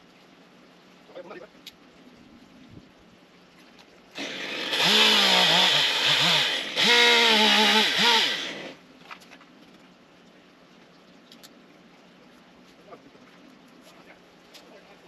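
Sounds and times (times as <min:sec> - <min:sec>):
chainsaw cutting wood: 0:04.2 - 0:08.8.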